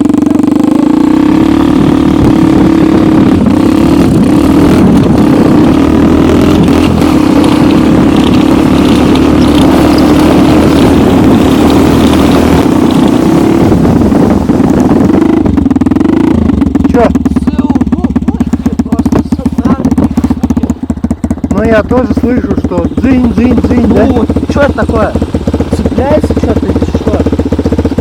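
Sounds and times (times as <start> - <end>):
snowmobile engine running: 0.0 - 28.0.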